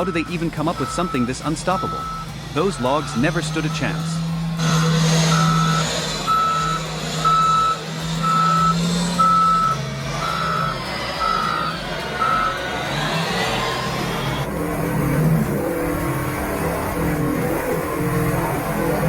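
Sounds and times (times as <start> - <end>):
back-up alarm beeping: 0.0 - 4.2, 5.3 - 12.7
diesel engine running: 0.0 - 19.0.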